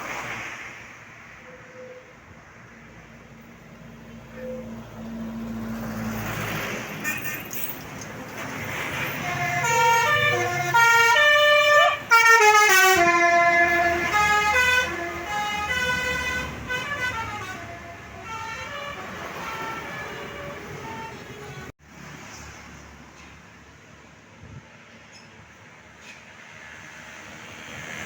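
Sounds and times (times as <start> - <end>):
bus engine: 0.0 - 28.0
road noise: 0.0 - 28.0
bus musical horn melody: 8.4 - 21.7.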